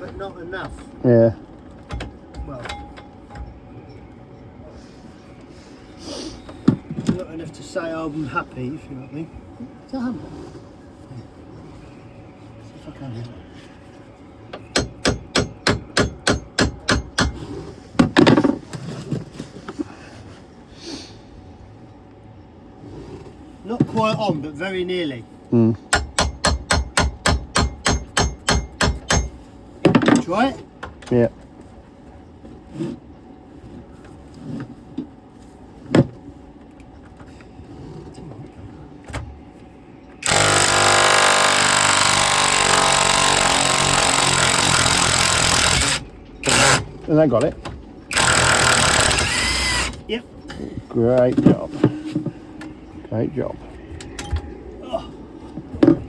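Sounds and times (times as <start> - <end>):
tools knocking on metal: 14.7 - 17.4, 25.9 - 30.2
cordless power tool running: 40.2 - 46.9, 48.1 - 50.0.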